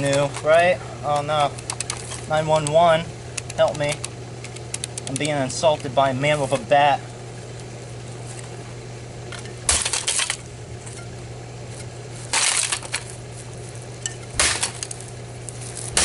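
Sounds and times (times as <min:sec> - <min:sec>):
loose plastic parts clattering: 0:00.0 - 0:02.8, 0:12.3 - 0:13.2
steady low hum: 0:00.0 - 0:16.0
metal bat smashing plastic phone: 0:09.6 - 0:10.4, 0:12.3 - 0:13.0, 0:14.4 - 0:15.0.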